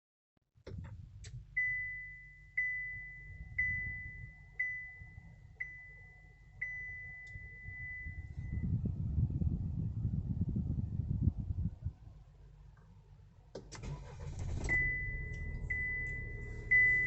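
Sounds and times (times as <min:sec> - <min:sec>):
low cabin rumble: 0:00.6 - 0:17.0
dashboard warning chime: 0:01.5 - 0:08.6, 0:14.0 - 0:17.0.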